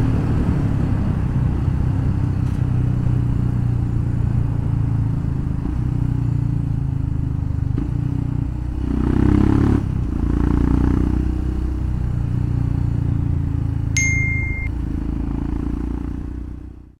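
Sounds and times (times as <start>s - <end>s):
motorcycle engine running: 0.0s - 16.9s
short high beep: 14.0s - 14.7s.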